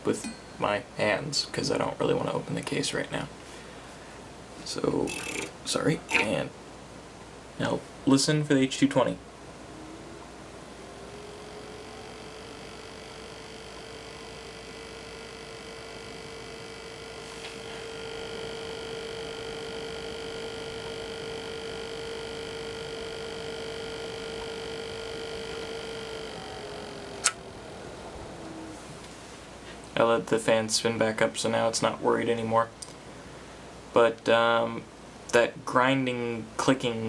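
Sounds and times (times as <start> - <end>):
pump whine: 5.0 - 6.6, 7.3 - 30.5
sharp click: 27.2 - 27.4.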